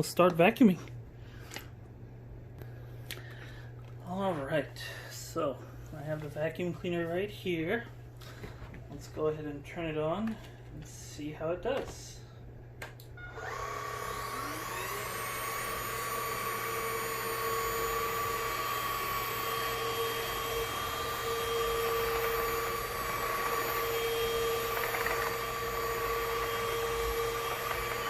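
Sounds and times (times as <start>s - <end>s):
stick vacuum motor whining: 12.9s - 28.0s.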